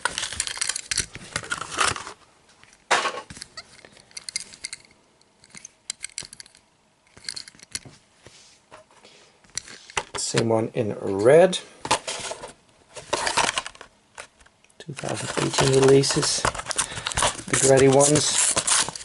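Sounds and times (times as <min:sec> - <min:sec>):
plastic blister and card crackling: 0:14.9 - 0:19.0.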